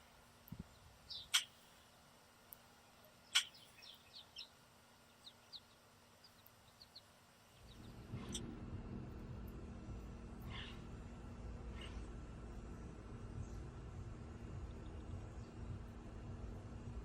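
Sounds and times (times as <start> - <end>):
songbirds calling: 0.0 - 8.4, 10.4 - 16.9
low rumbling noise: 7.6 - 17.0.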